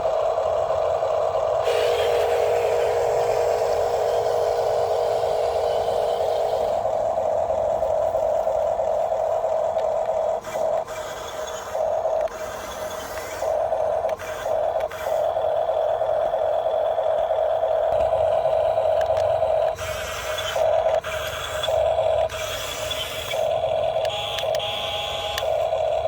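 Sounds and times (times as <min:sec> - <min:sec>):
small electric motor whining: 0:00.0 - 0:26.0.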